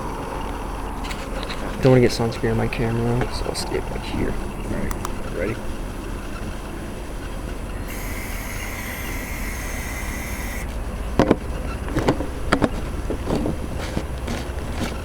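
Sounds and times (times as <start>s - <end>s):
steady hiss: 0.1s - 10.8s
sharp clicks and knocks: 11.2s - 15.0s.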